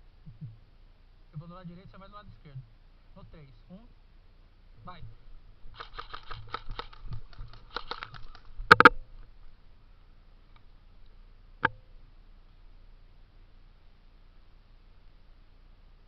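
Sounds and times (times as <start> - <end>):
quick light footsteps: 5.0 - 9.5.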